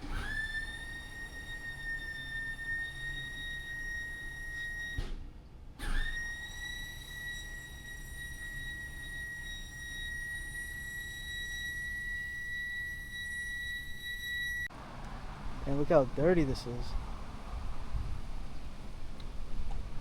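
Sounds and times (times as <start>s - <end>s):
steady high-pitched tone: 6.5s - 14.7s.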